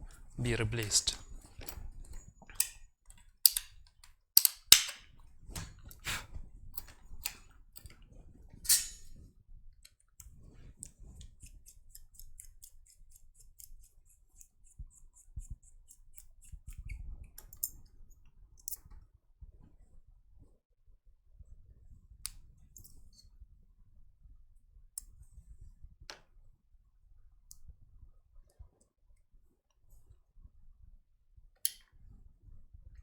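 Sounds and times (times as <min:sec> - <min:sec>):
tools clicking and knocking: 0:00.8 - 0:05.7, 0:08.7 - 0:09.1.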